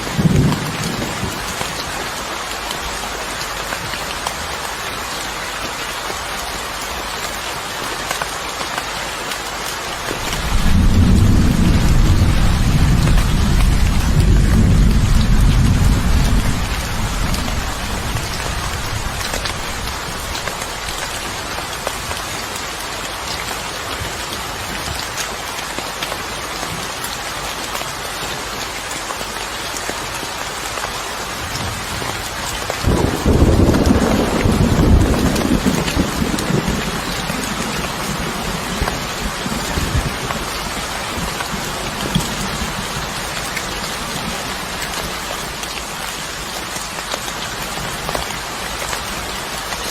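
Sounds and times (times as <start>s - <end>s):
thunder rumbling: 0.0s - 1.7s, 10.2s - 21.4s, 32.8s - 43.2s
steady rain: 0.0s - 49.9s.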